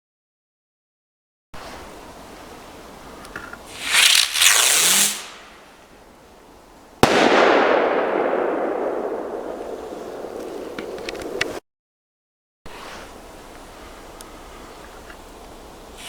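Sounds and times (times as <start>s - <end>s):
firework hissing rush: 3.7s - 6.0s
firework bang with echo: 7.0s - 11.6s.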